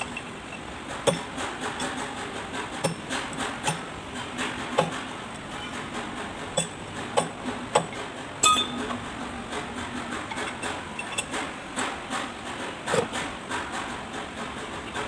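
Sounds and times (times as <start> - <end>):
metal clinking on metal: 8.4 - 8.8.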